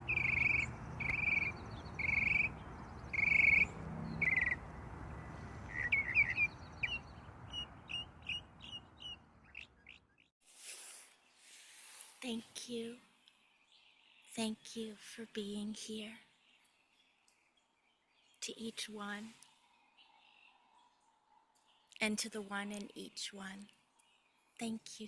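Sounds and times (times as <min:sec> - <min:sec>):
low rushing background: 0:00.0 - 0:09.5
birds calling and chirping: 0:00.0 - 0:10.3
soft breathy noise: 0:10.5 - 0:12.2.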